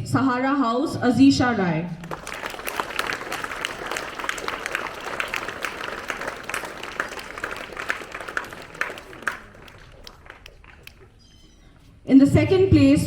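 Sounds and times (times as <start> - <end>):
audience applauding: 2.0 - 11.2.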